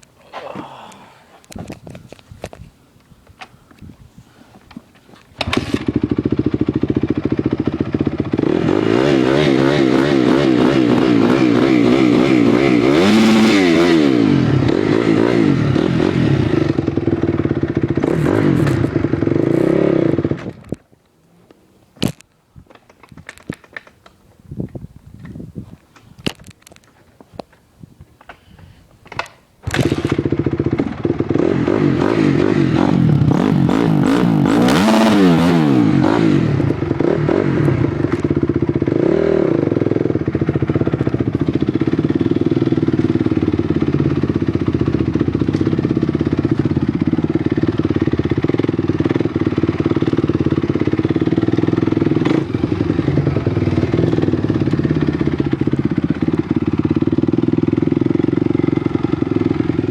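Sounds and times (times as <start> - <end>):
motorcycle engine starting and revving: 5.2 - 20.9, 29.1 - 59.9.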